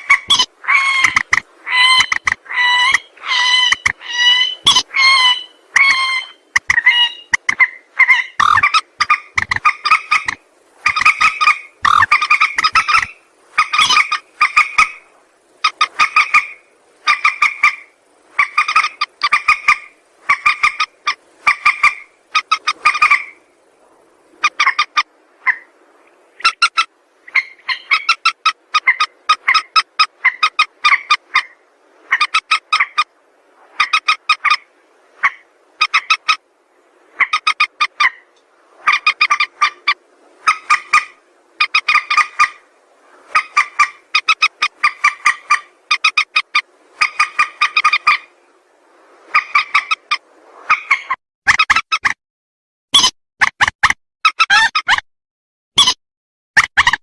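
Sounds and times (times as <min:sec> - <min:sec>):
rail bird harsh pulsed calls: 0:00.0 - 0:23.5.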